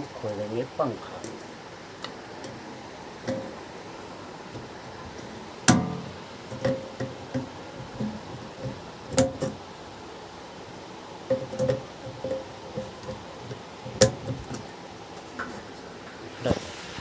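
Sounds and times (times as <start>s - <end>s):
metallic knocks and clanks: 3.2s - 3.7s, 4.6s - 9.7s, 11.2s - 15.7s.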